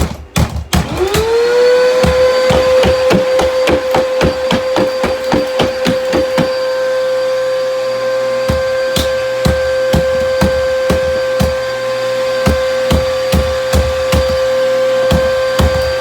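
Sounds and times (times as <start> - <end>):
vacuum cleaner motor whine: 0.8 - 16.0.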